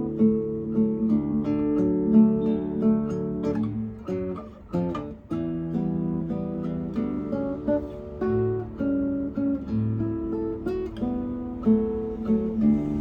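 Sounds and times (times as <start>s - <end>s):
acoustic guitar playing: 0.0s - 13.0s.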